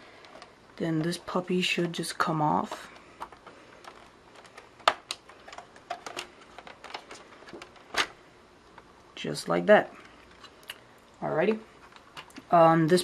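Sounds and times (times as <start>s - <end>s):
plastic and metal parts clicking: 2.7s - 8.9s.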